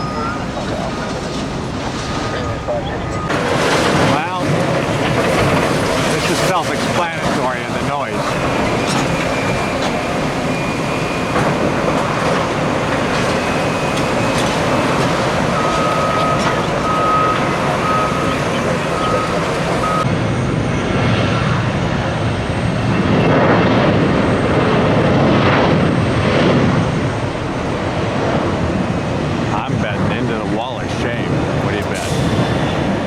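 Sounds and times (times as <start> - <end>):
reversing alarm beeping: 0.0 - 20.8
heavy construction machinery running: 0.0 - 33.0.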